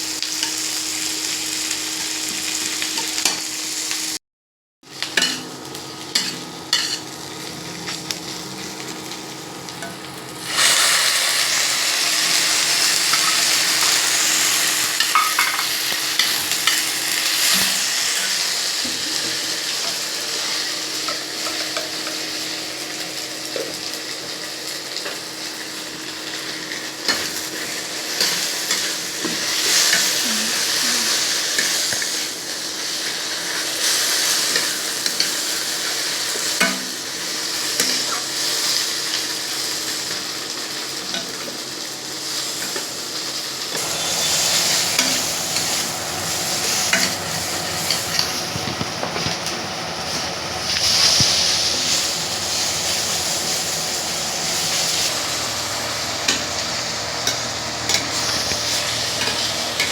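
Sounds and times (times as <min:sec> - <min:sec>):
curry sizzling in a pan: 0:00.0 - 0:04.2, 0:04.8 - 0:59.9.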